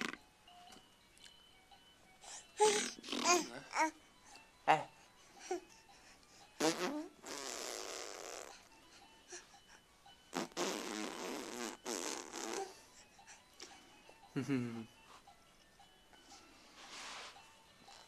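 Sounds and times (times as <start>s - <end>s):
child blowing raspberries: 6.6s - 8.7s, 10.3s - 12.8s.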